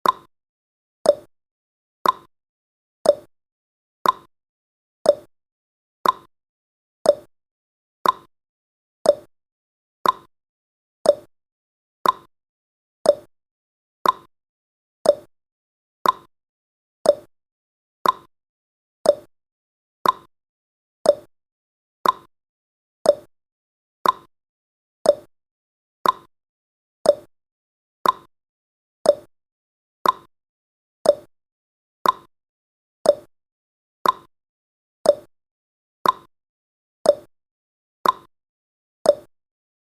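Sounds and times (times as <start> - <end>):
clock ticking: 2.0 - 2.3, 4.0 - 4.3, 6.0 - 6.3, 8.0 - 8.3, 10.0 - 10.3, 12.0 - 12.3, 14.0 - 14.3, 15.1 - 15.3, 16.0 - 16.3, 17.1 - 17.3, 18.0 - 18.3, 19.1 - 19.3, 20.0 - 20.3, 21.1 - 21.3, 22.0 - 22.3, 24.0 - 24.3, 26.0 - 26.3, 28.0 - 28.3, 29.1 - 29.3, 30.0 - 30.3, 31.1 - 31.3, 32.0 - 32.3, 33.1 - 33.3, 34.0 - 34.3, 35.1 - 35.3, 36.0 - 36.3, 38.0 - 38.3, 39.1 - 39.3.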